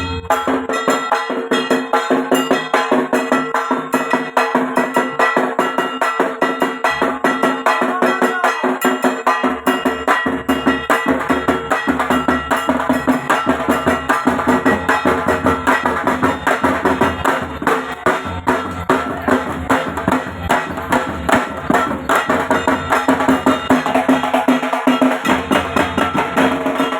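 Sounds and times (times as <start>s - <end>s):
deep booming drum: 0.0s - 0.8s, 9.5s - 26.9s
drums beaten with sticks: 0.0s - 26.9s.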